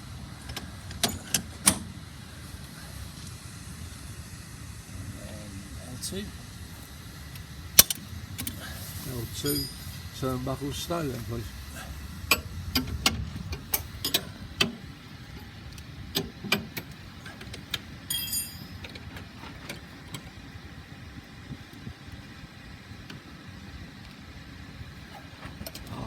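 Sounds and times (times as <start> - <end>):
steady low hum: 0.0 - 26.0
metal hardware clicking: 12.3 - 14.8.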